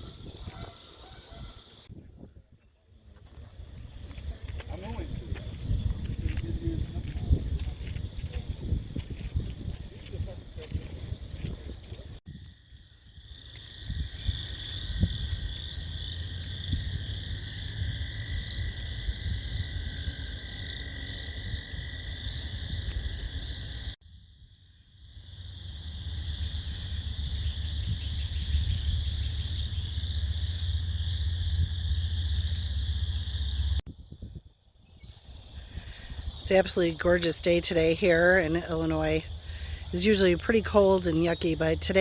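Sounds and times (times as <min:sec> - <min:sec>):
frogs chorus trilling: 0:00.0 - 0:01.9, 0:11.2 - 0:42.0
low rumble: 0:03.4 - 0:36.4.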